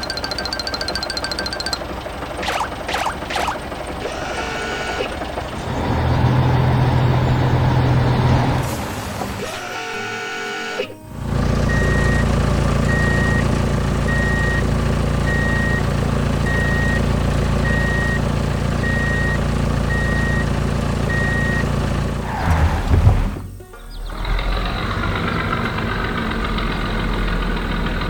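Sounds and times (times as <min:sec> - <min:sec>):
reversing alarm beeping: 0:00.0 - 0:06.0, 0:11.6 - 0:21.8
heavy vehicle engine rumble: 0:00.0 - 0:10.2, 0:10.9 - 0:28.0.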